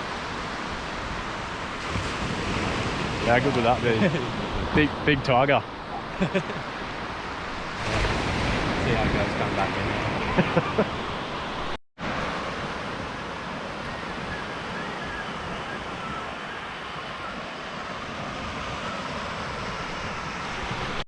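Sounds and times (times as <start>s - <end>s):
surf on beach: 0.0s - 21.0s
wind on microphone: 0.0s - 21.0s.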